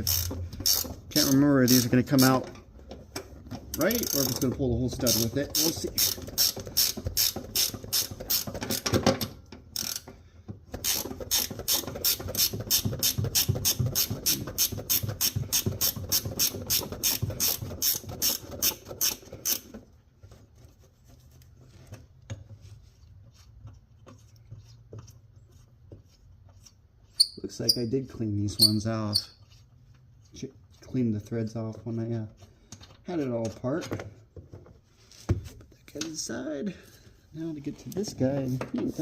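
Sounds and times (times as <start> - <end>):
ratcheting wrench clicking: 0.0 - 2.4, 3.7 - 9.0, 9.7 - 10.1, 10.8 - 19.7
faint handling sounds: 19.7 - 39.0.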